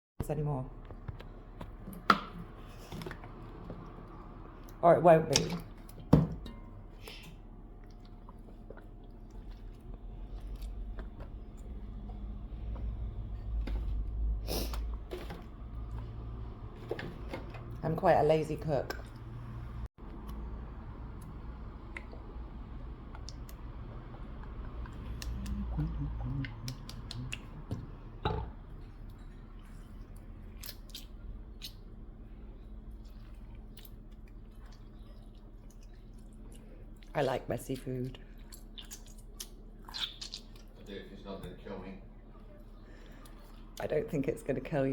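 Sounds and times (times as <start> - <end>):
low steady hum: 0.2 - 44.9
person chewing food: 6.9 - 13.6, 19.0 - 37.1, 38.2 - 40.9, 42.6 - 43.8.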